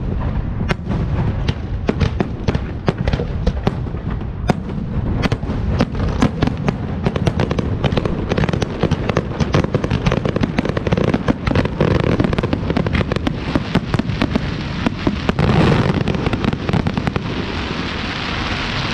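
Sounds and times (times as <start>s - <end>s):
low rumble: 0.0s - 8.4s
fireworks bangs and crackles: 0.0s - 18.9s.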